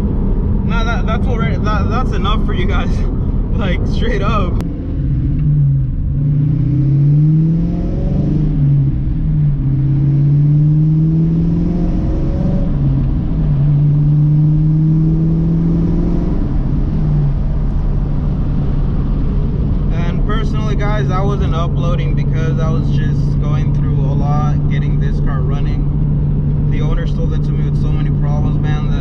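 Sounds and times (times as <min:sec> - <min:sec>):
car engine accelerating: 0:00.0 - 0:29.0.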